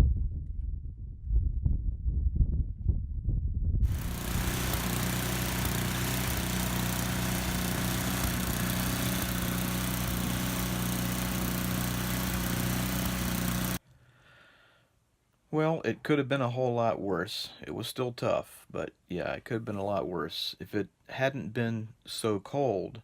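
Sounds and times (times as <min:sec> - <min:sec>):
small gas engine running: 0:03.9 - 0:13.8.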